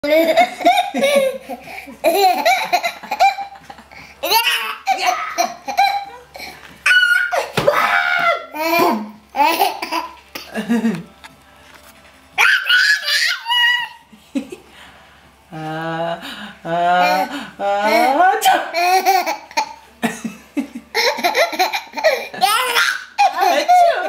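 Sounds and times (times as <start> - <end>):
child squealing: 6.8 - 8.5, 12.4 - 14.0.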